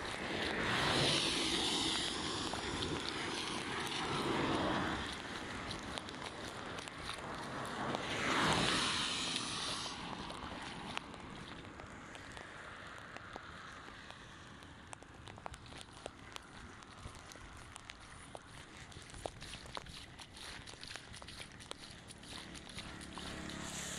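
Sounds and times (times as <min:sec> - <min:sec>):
running water rushing: 0:00.0 - 0:11.4, 0:18.2 - 0:23.9
rain: 0:00.0 - 0:23.9.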